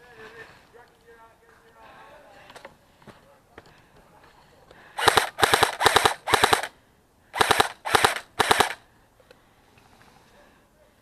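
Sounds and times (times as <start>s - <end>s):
airsoft gun firing bursts: 5.0s - 6.7s, 7.3s - 8.8s.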